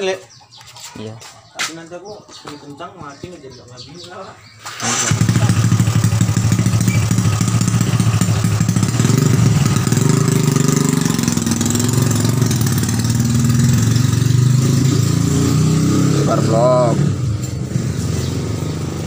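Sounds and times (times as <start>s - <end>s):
motorcycle engine idling: 2.6s - 14.8s.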